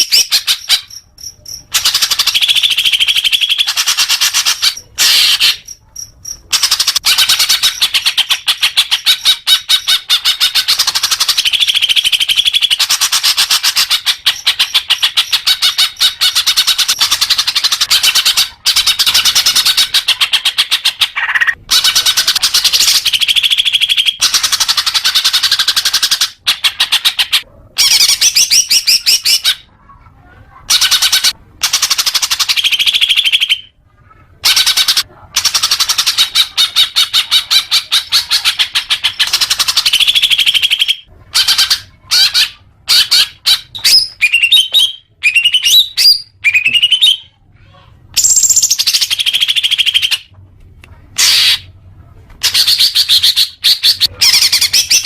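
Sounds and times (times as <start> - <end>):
bird singing rapid chattering notes: 0.0 - 26.9.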